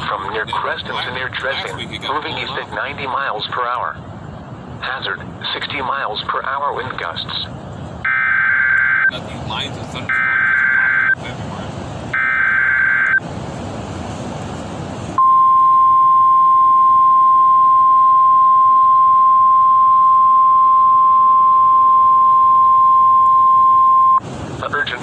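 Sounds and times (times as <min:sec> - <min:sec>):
radio hiss: 0:00.0 - 0:04.0, 0:04.8 - 0:07.6, 0:24.2 - 0:25.0
steady warning alarm tone: 0:08.0 - 0:09.2, 0:10.1 - 0:11.2, 0:12.1 - 0:13.2, 0:15.2 - 0:24.2
warbling data tones: 0:12.2 - 0:13.2.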